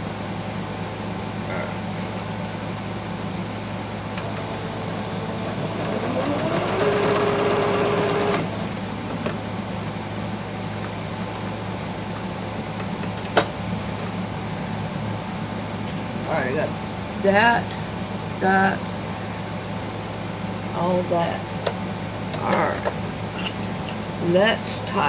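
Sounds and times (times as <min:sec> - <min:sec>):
steady background hum: 0:00.0 - 0:25.0
sewing machine motor whining: 0:04.2 - 0:08.8.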